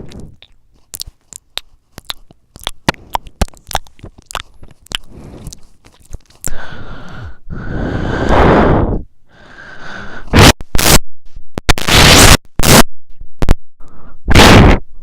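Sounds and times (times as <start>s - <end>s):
heavy breathing into microphone: 5.0s - 10.4s, 13.8s - 14.3s.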